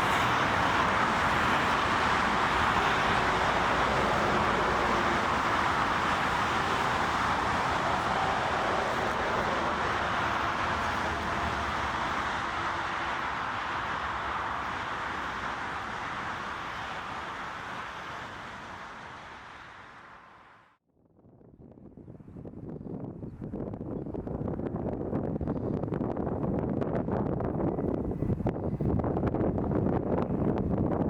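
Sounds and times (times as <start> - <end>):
jet engines roaring: 0.0 - 20.6.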